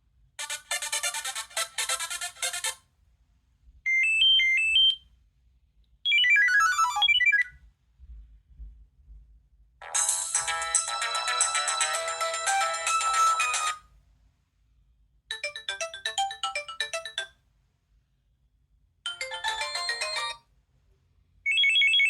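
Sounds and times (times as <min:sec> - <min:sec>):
mobile phone ringtones: 0:06.1 - 0:07.5, 0:09.8 - 0:13.8, 0:15.3 - 0:17.3, 0:19.1 - 0:20.4, 0:21.5 - 0:22.0.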